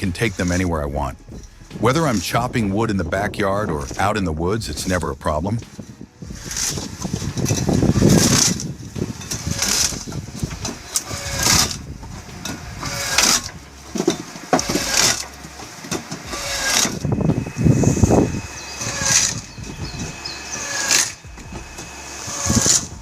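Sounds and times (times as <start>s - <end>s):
harsh cutting burst: 0.0s - 23.0s
wood-cutting machine engine: 0.0s - 23.0s.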